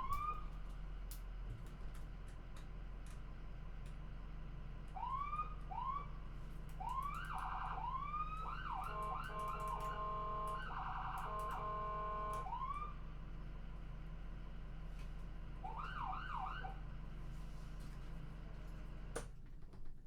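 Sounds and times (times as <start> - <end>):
ambulance siren: 5.0 - 6.1, 6.8 - 13.0, 15.6 - 16.8.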